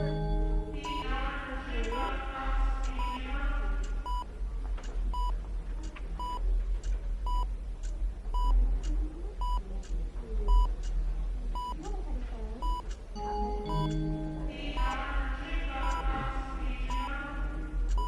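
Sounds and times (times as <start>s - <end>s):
heart monitor beeping: 0.0s - 1.1s, 1.9s - 2.2s, 3.0s - 3.2s, 4.0s - 4.3s, 5.1s - 5.4s, 6.2s - 6.4s, 7.2s - 7.6s, 8.3s - 8.6s, 9.4s - 9.6s, 10.5s - 10.8s, 11.6s - 11.8s, 12.6s - 12.9s, 13.7s - 14.1s, 14.8s - 15.0s, 15.8s - 16.3s, 16.9s - 17.1s
clock ticking: 0.0s - 1.2s, 1.8s - 2.2s, 2.8s - 3.2s, 3.8s - 5.4s, 6.2s - 11.0s, 11.6s - 12.0s, 12.6s - 13.1s, 13.7s - 14.1s, 14.8s - 15.0s, 15.8s - 16.0s, 16.9s - 17.1s
low room hum: 0.0s - 18.0s.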